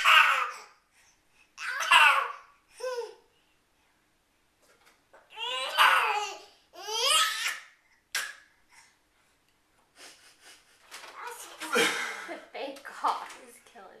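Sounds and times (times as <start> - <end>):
baby laughing: 10.4 - 12.3.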